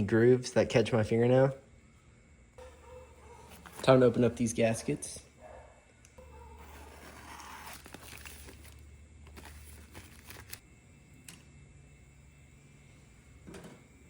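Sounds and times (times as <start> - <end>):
plastic packaging tearing and crinkling: 6.6 - 10.6.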